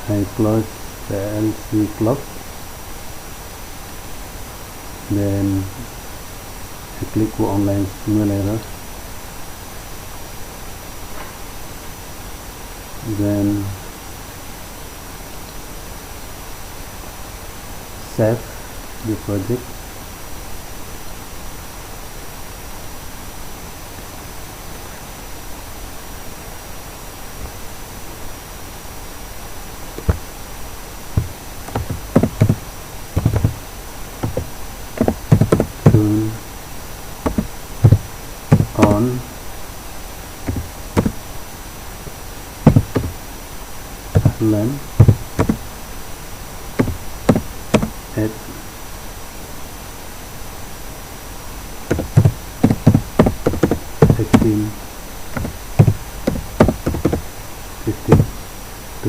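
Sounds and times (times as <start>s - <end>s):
steady hiss: 0.0s - 59.0s
keyboard keys tapping: 30.0s - 30.2s, 31.2s - 32.6s, 33.2s - 33.6s, 34.2s - 36.2s, 37.3s - 39.2s, 40.5s - 41.2s, 42.6s - 43.2s, 44.2s - 45.6s, 46.8s - 48.0s, 51.9s - 54.6s, 55.4s - 57.3s, 58.0s - 58.3s.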